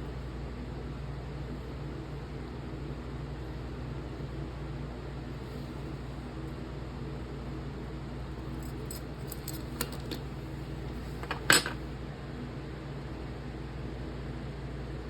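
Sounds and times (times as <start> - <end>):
steady low hum: 0.0 - 14.0
small metal parts clinking: 8.4 - 10.4, 11.0 - 11.9.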